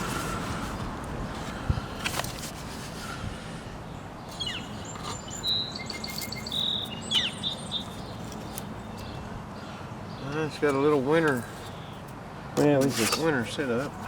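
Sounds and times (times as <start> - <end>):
songbird chirping: 3.9 - 12.1.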